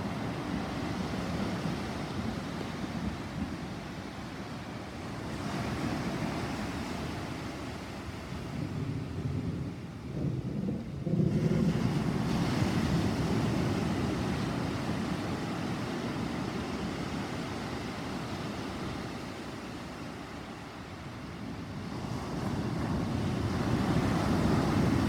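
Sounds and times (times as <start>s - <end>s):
thunder rumbling: 8.4s - 15.0s.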